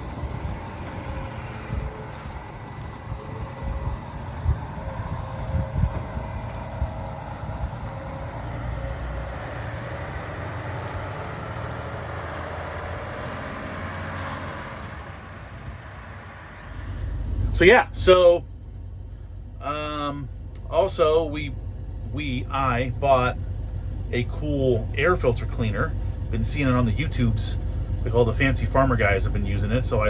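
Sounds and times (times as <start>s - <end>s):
faint steady whine: 0.0s - 9.6s
heavy diesel machinery running: 0.0s - 30.0s.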